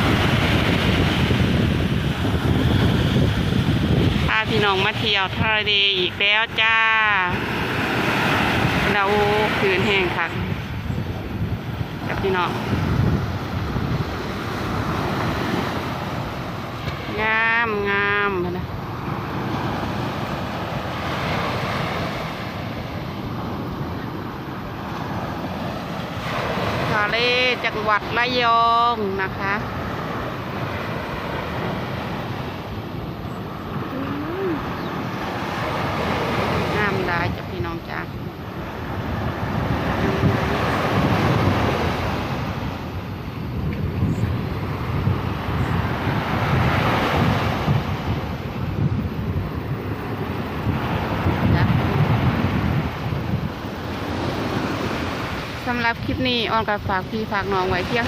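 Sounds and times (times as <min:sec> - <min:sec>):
surf rolling onto beach: 0:00.0 - 0:05.4
surf breaking on a beach: 0:00.0 - 0:58.0
wind buffeting microphone: 0:00.0 - 0:58.0.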